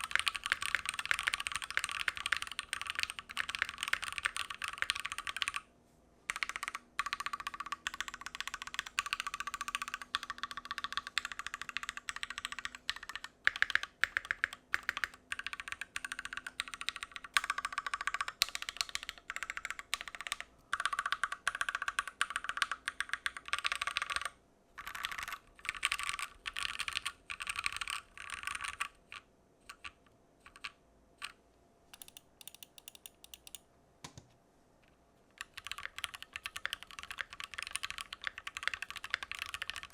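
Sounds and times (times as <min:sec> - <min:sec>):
mechanical keyboard typing: 0:00.0 - 0:05.7, 0:06.3 - 0:33.6, 0:35.3 - 0:39.9.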